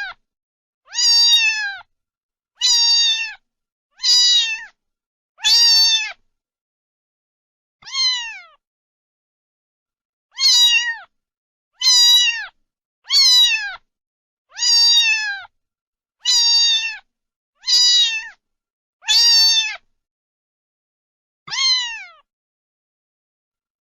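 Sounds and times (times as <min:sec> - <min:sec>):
cat meowing: 0:00.0 - 0:00.2, 0:00.9 - 0:01.9, 0:02.6 - 0:03.4, 0:04.0 - 0:04.8, 0:05.4 - 0:06.2, 0:07.8 - 0:08.6, 0:10.3 - 0:11.1, 0:11.8 - 0:13.8, 0:14.5 - 0:15.5, 0:16.2 - 0:18.4, 0:19.0 - 0:19.9, 0:21.5 - 0:22.3.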